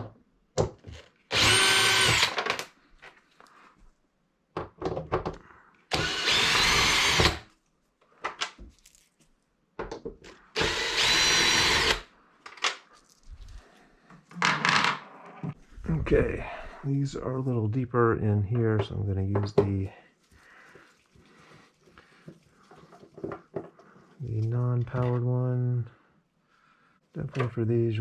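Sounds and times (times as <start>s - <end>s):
power drill whine: 1.3s - 2.6s, 5.9s - 7.4s, 10.6s - 12.1s.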